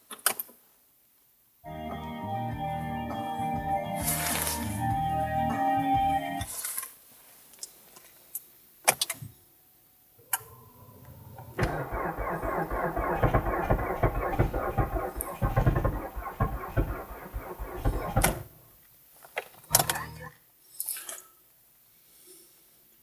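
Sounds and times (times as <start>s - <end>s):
car starter cranking engine: 11.3s - 18.7s.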